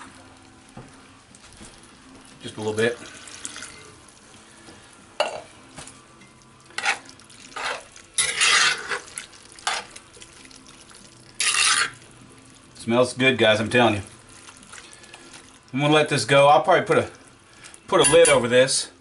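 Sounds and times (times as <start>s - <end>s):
spoon scraping stew in pot: 6.7s - 12.1s.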